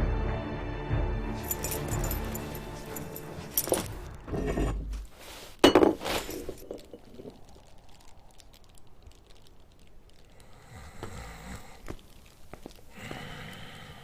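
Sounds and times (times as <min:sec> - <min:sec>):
sharp glass-like clinking impacts: 0:01.4 - 0:04.1, 0:05.6 - 0:07.4.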